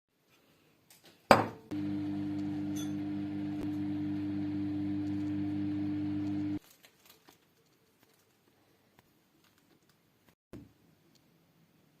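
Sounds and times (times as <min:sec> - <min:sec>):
microwave oven humming: 0:01.7 - 0:06.6.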